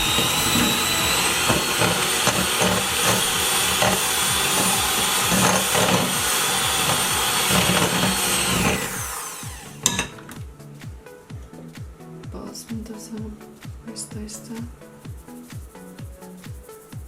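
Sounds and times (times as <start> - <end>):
electric mixer whining: 0.0 - 10.3.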